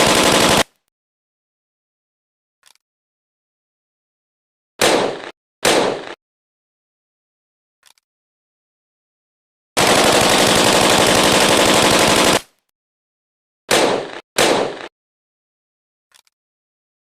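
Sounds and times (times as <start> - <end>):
automatic gunfire bursts: 0.0 - 0.7, 9.8 - 12.5.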